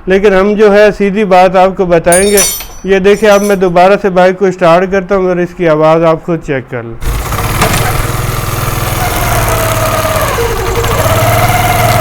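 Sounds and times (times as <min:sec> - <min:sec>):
motorcycle engine running: 0:07.0 - 0:12.0.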